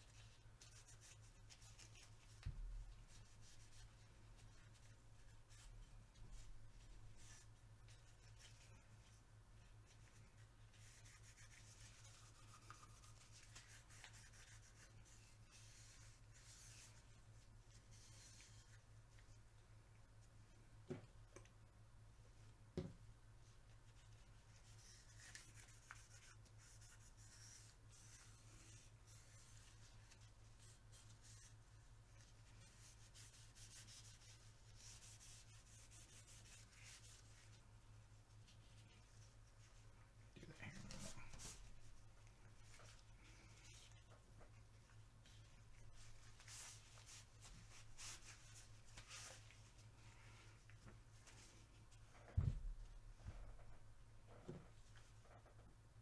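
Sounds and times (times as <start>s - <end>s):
cloth rubbing on metal: 10.0s - 18.9s, 40.4s - 52.3s.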